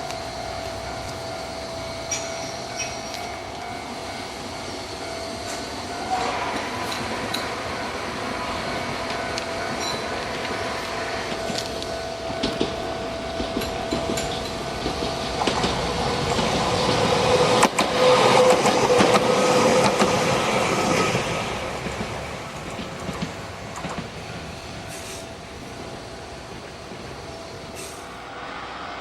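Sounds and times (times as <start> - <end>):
electric train whining on rails: 0.0 - 29.0
track clicks: 5.2 - 27.8.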